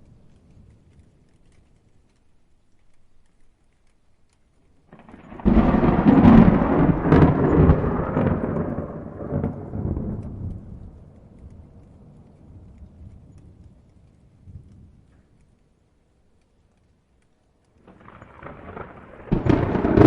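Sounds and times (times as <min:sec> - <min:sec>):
thunder cracking and rumbling: 0:04.9 - 0:15.4, 0:17.8 - 0:20.0.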